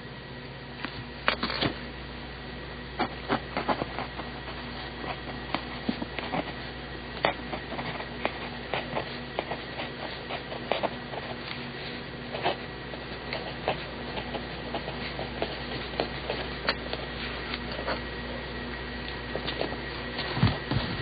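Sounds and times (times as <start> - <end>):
steady hum: 0.0 - 21.0
pencil scratching on paper: 3.0 - 18.1.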